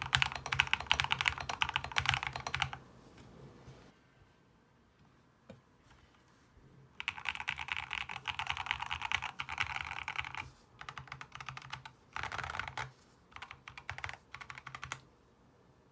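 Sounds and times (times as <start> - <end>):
mechanical keyboard typing: 0.0 - 2.8, 7.0 - 15.1.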